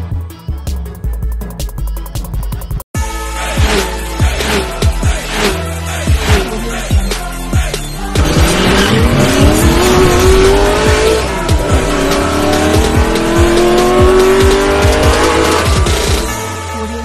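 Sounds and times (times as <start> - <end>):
music with steady beat: 0.0 - 16.6
car engine revving: 3.5 - 6.8, 8.0 - 17.0.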